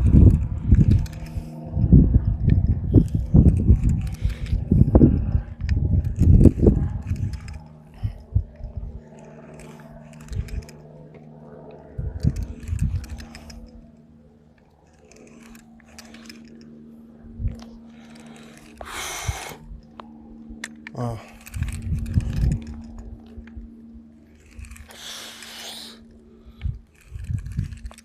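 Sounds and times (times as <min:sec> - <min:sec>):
low hum: 0:00.0 - 0:28.0
pipe cutter crunching and scraping: 0:14.6 - 0:16.7, 0:17.5 - 0:19.6, 0:26.6 - 0:28.0.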